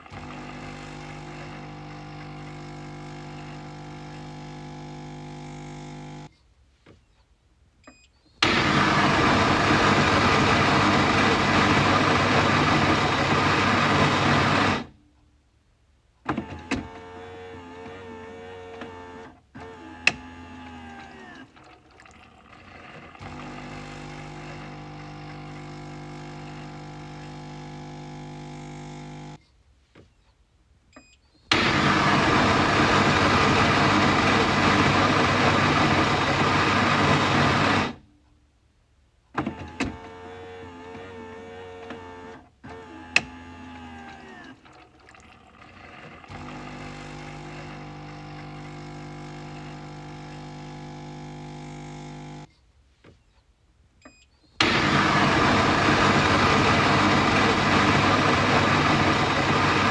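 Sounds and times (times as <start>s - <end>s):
coffee machine motor hum: 0.0s - 6.3s, 8.4s - 15.0s, 22.3s - 29.4s, 31.5s - 38.0s, 43.2s - 52.5s, 54.6s - 59.9s
coffee machine rushing noise: 8.4s - 14.9s, 31.5s - 38.0s, 54.6s - 59.9s.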